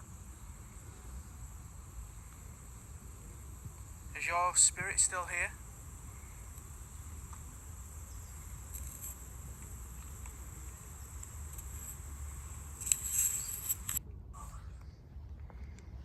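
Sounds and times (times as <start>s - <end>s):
hiss: 0.0s - 14.6s
thin high whine: 0.0s - 14.8s
loud rustle: 5.7s - 14.0s.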